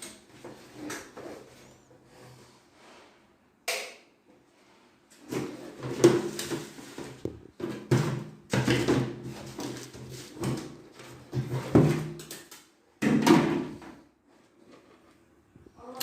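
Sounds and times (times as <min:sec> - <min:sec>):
plastic parts clattering and scraping: 0:05.2 - 0:12.6.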